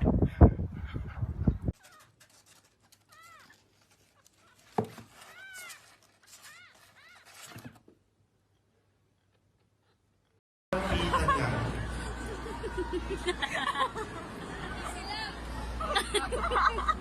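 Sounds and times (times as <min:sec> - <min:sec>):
small animal high calls: 0:03.1 - 0:07.5.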